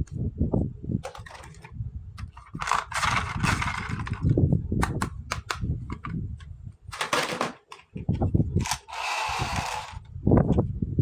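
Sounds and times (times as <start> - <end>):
sharp plastic clicks: 2.2 - 6.2.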